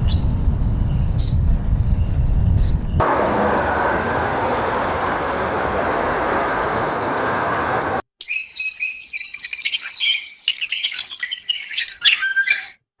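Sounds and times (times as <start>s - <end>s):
small songbird chirping: 0.0s - 3.0s, 8.2s - 12.8s
steady rushing noise: 2.9s - 8.0s.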